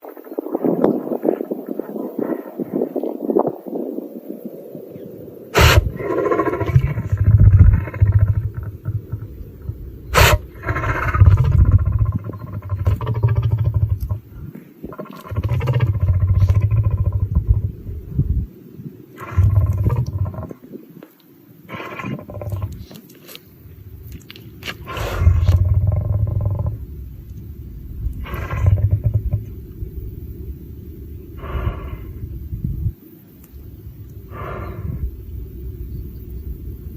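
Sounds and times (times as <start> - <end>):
low rumbling noise: 0.2 - 20.9, 21.6 - 23.0, 23.6 - 36.9
lion sneezing: 5.6 - 7.4, 10.1 - 11.3, 24.6 - 25.6
lion sneezing and snorting: 5.6 - 9.2, 10.1 - 13.7, 24.6 - 25.8
lion growling: 5.6 - 17.8, 19.1 - 20.6, 21.7 - 23.1, 24.7 - 26.8, 28.1 - 29.7.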